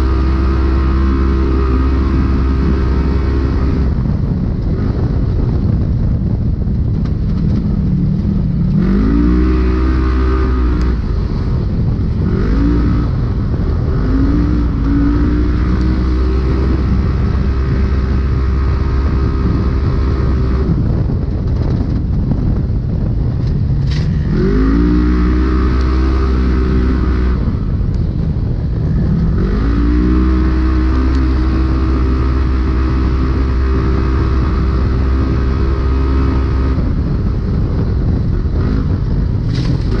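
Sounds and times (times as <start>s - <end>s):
engine revving: 0.0s - 5.4s, 7.2s - 21.7s, 23.4s - 40.0s
steady noisy rush: 0.0s - 40.0s.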